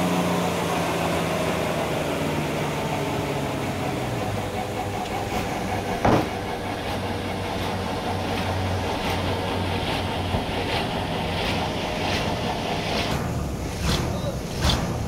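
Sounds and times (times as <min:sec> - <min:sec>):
sawmill machinery humming: 0:00.0 - 0:15.0
sharp knock: 0:06.0 - 0:06.5.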